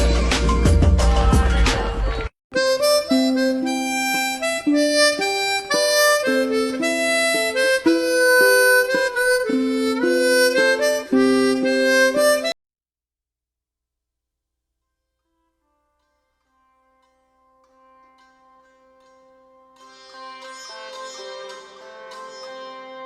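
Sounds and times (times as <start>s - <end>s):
background music melody: 2.6s - 12.6s, 15.3s - 23.0s.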